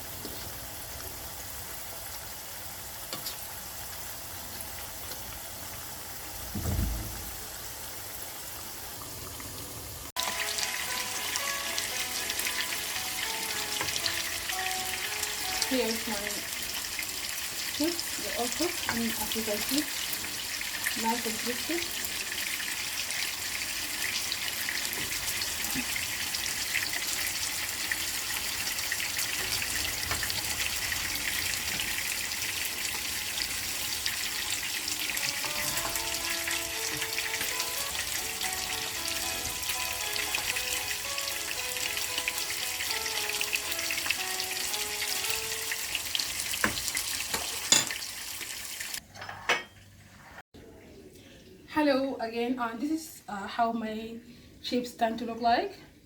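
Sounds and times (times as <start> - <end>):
soft background music: 10.2 - 16.6, 35.0 - 46.2.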